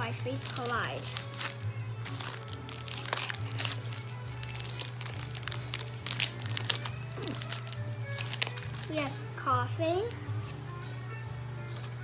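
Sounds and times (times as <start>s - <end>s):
foil pack tearing and crinkling: 0.0s - 9.1s
background music: 0.0s - 12.0s.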